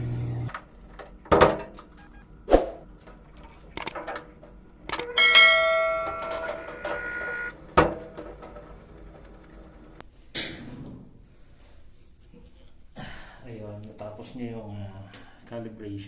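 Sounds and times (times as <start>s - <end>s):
scattered clicks and knocks: 0.5s - 10.0s
bell-like ringing tone: 3.2s - 10.0s.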